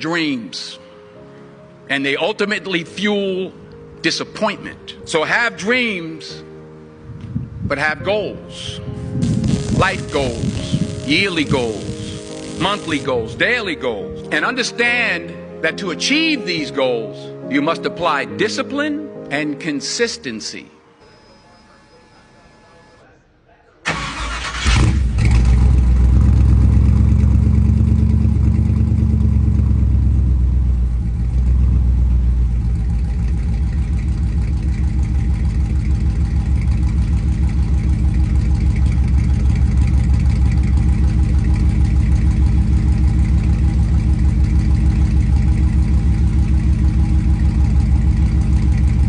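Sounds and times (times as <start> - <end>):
pickup engine idling: 24.1 - 49.0.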